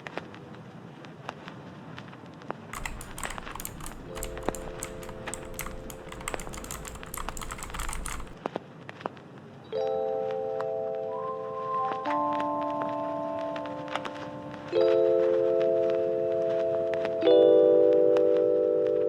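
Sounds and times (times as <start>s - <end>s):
mechanical keyboard typing: 2.8s - 8.4s.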